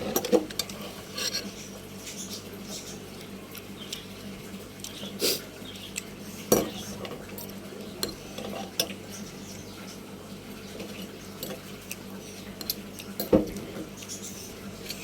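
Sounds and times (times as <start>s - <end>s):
utensils clinking against a bowl: 0.0s - 4.0s, 5.7s - 9.3s, 10.8s - 15.0s.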